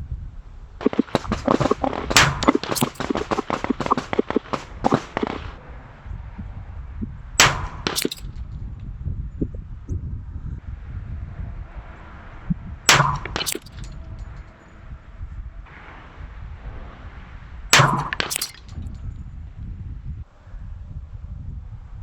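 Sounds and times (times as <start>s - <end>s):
wind rumble on microphone: 0.0s - 22.0s
loud sharp gunshots: 0.9s - 5.6s, 7.4s - 8.2s, 12.9s - 13.9s, 17.8s - 18.6s
rapid overlapping gunshots: 0.9s - 5.6s.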